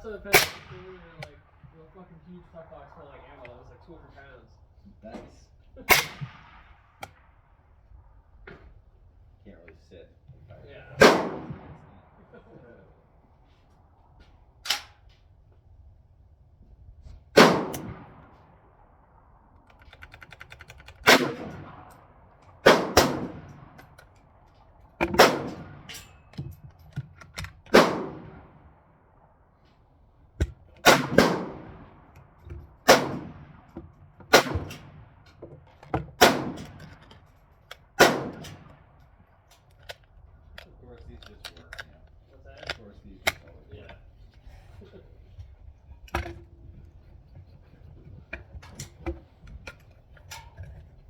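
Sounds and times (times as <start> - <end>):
rifle gunshots echoing: 0.0 - 4.2, 5.8 - 8.2, 10.7 - 13.2, 17.3 - 19.6, 21.0 - 26.8, 27.5 - 29.6, 30.2 - 35.4, 36.1 - 41.4.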